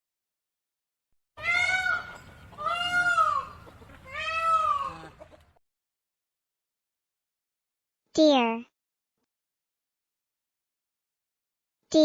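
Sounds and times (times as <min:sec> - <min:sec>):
peafowl wailing calls: 0:01.4 - 0:05.6.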